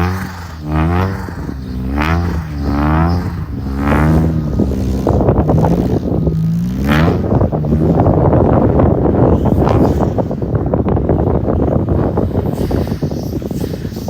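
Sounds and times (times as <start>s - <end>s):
car engine revving: 0.0s - 14.0s
turbo flutter: 0.0s - 14.0s.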